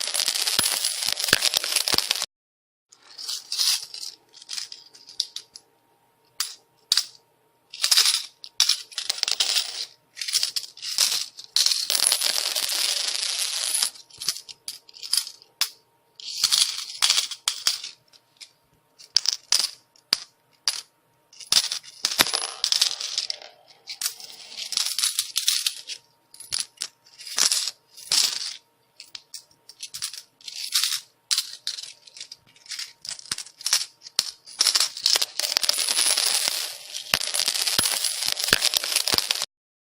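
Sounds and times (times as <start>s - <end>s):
coins clattering: 0.0s - 2.3s, 3.0s - 5.6s, 6.4s - 39.5s.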